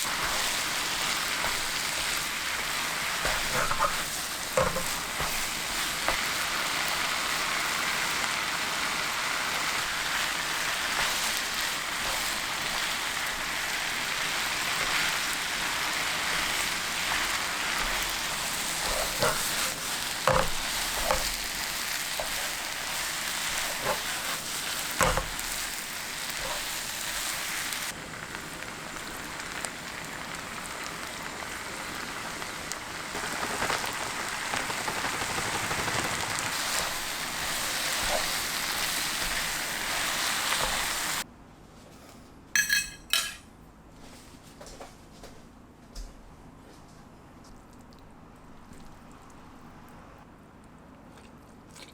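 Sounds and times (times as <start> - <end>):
food sizzling in frying pan: 0.0 - 41.3.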